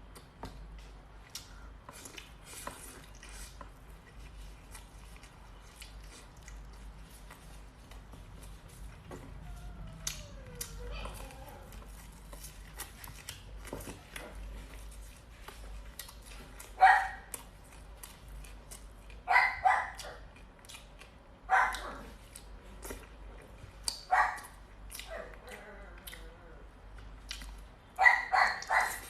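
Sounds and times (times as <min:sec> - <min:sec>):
dog barking: 0:16.8 - 0:17.3, 0:19.3 - 0:20.2, 0:21.5 - 0:22.1, 0:24.1 - 0:24.5, 0:28.0 - 0:29.0.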